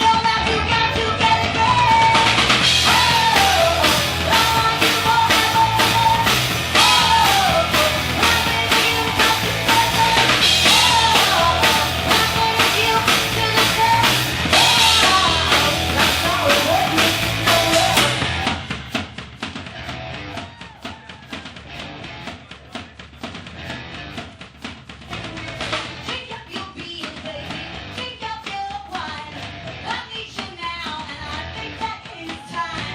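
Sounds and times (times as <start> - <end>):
woman singing: 0.0 - 18.2, 25.1 - 32.9
live rock band playing: 0.0 - 26.2, 29.3 - 30.0.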